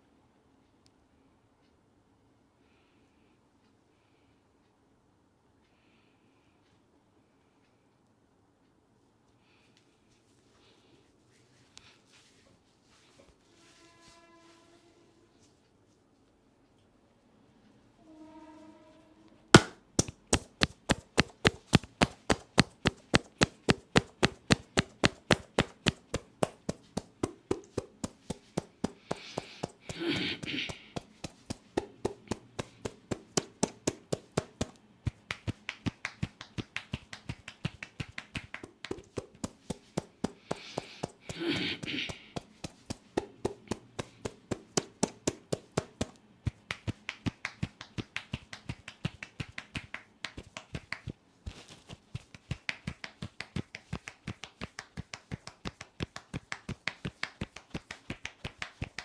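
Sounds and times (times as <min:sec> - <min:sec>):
hands slapping on head: 0:19.6 - 0:59.0.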